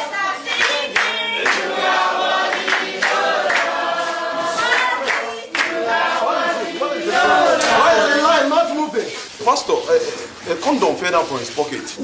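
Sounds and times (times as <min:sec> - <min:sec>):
congregation singing in unison: 0:00.0 - 0:08.9.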